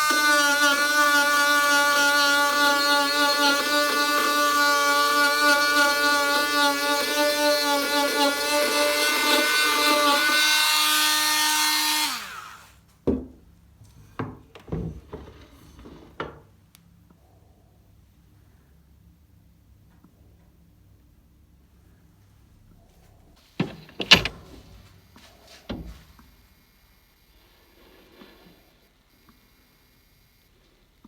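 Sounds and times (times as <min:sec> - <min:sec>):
power tool grinding: 0:00.0 - 0:12.8, 0:23.6 - 0:24.7
handling knocks and clicks: 0:23.6 - 0:24.9.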